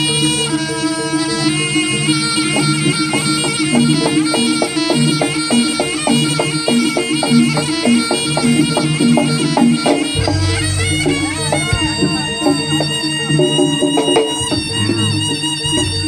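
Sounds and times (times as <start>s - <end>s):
reedy shawm melody: 0.0s - 16.0s
gong chimes and drum strokes: 8.4s - 16.0s.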